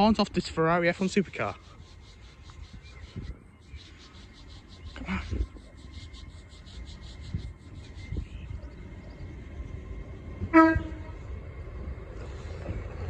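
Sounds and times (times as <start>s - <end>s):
low rumble: 1.7s - 13.0s
train horn toot: 10.4s - 11.4s.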